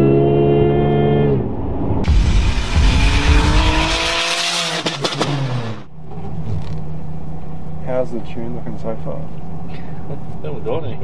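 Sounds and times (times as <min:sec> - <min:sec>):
tyre and road noise: 0:00.9 - 0:11.0
car engine running: 0:02.1 - 0:10.6.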